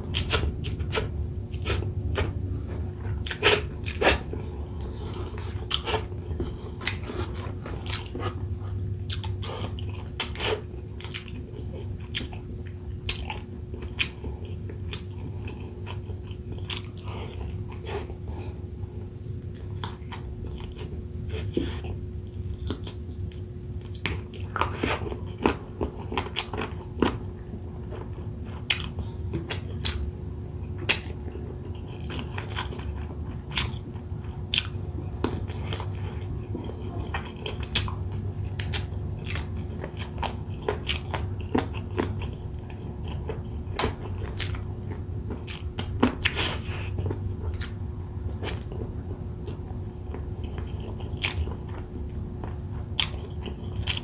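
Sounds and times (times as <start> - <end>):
chewing and biting food: 0.0 - 54.0
steady low hum: 0.0 - 54.0.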